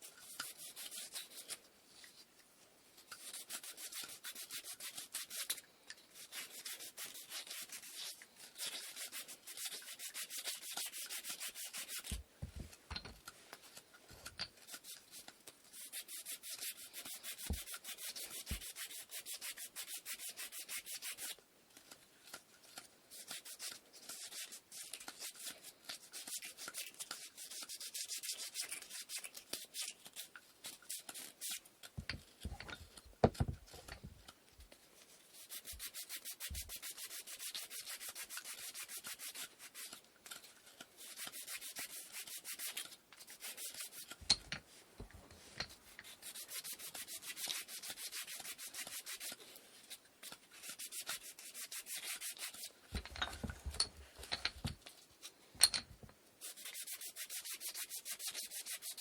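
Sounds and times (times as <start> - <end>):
sandpaper rubbing wood: 3.2 - 5.5, 6.2 - 12.2, 15.7 - 21.4, 35.3 - 40.0, 41.0 - 44.2, 46.0 - 49.4, 50.5 - 52.7, 56.4 - 59.0.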